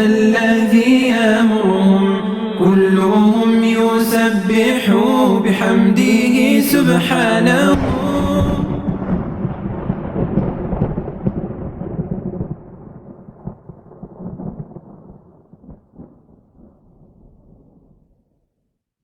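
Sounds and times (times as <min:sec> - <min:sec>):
rolling thunder: 0:07.7 - 0:18.0.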